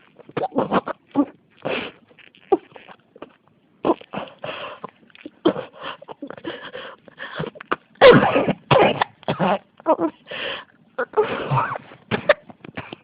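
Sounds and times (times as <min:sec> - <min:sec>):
woman coughing: 0:08.0 - 0:10.1, 0:11.1 - 0:13.0.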